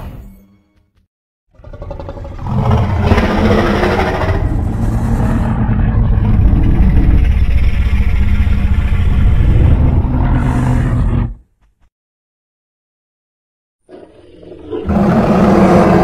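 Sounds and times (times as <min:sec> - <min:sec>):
deep monster growl: 0:01.5 - 0:11.5, 0:13.9 - 0:16.0.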